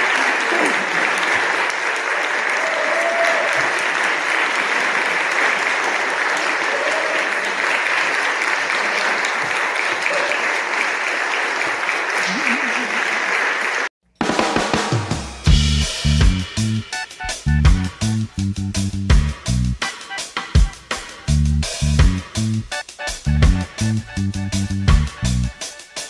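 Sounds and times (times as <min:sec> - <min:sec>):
audience applauding: 0:00.0 - 0:13.9.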